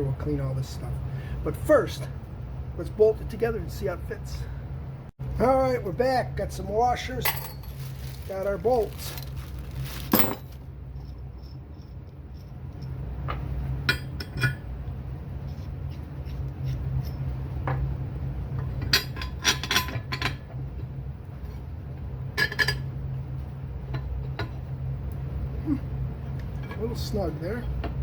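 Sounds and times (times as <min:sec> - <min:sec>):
bolts clinking on steel plates: 0:07.2 - 0:09.3.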